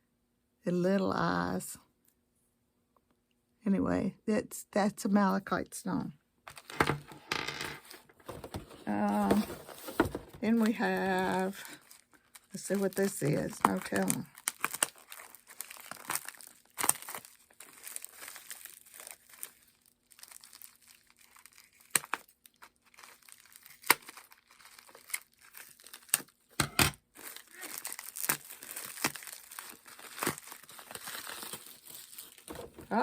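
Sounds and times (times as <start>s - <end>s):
packing material tearing: 6.5s - 26.5s, 27.1s - 33.0s
packing material crinkling: 6.5s - 33.0s.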